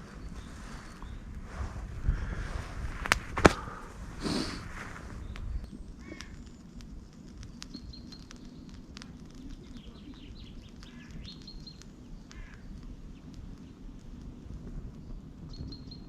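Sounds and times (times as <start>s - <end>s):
small birds chirping: 0.0s - 16.0s
faint clicks: 5.2s - 16.0s.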